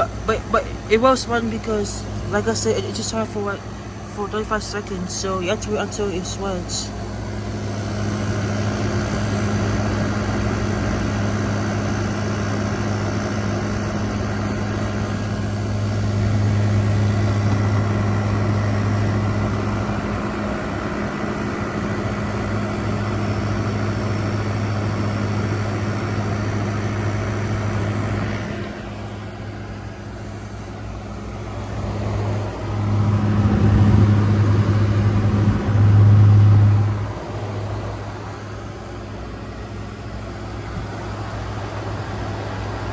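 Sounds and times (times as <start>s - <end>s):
air conditioner fan: 0.0s - 42.9s
compressor hum: 0.0s - 42.9s.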